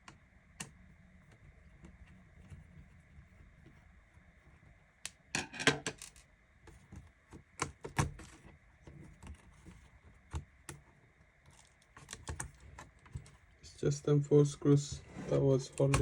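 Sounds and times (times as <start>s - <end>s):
plastic laptop parts handled: 5.1s - 10.8s, 11.4s - 13.5s.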